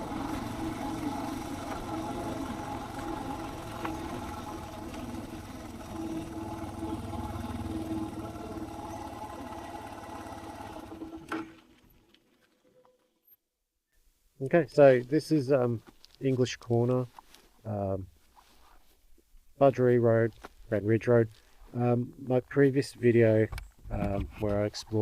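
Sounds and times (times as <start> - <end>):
motorcycle engine running: 0.0 - 11.6.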